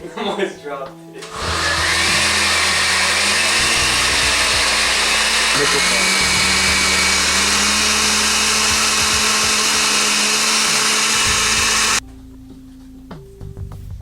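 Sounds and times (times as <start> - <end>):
blender running: 1.2 - 12.0.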